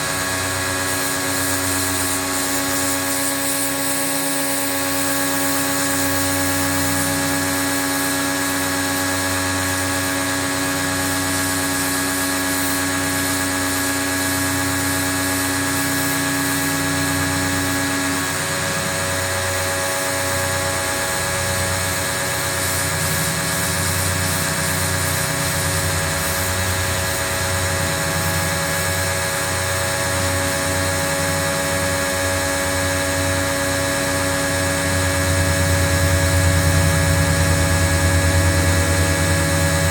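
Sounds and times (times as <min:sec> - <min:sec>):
pressure washer motor drone: 0:00.0 - 0:39.9
hiss of water spray: 0:00.2 - 0:18.6, 0:19.6 - 0:31.0.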